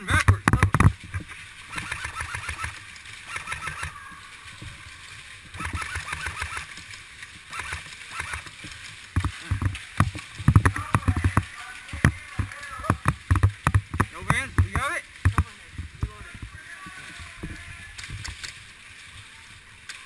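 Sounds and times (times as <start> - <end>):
gear knocks and thumps: 0.0 - 1.4, 8.6 - 16.6
airsoft gun bursts: 1.7 - 4.0, 5.6 - 6.7, 7.5 - 8.5.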